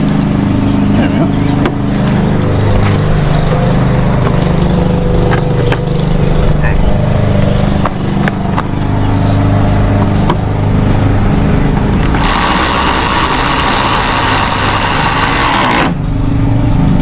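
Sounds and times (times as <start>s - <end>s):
low steady drone: 0.0s - 17.0s
power drill driving a screw: 12.0s - 16.0s.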